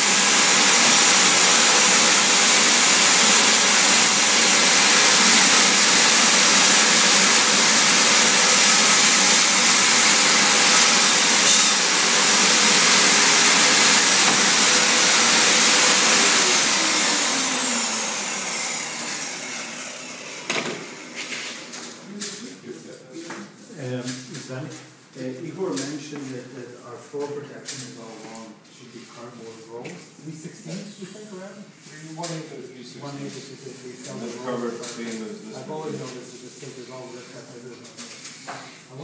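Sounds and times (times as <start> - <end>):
saw motor winding down: 0.0 - 21.2
electric saw running: 0.0 - 22.0.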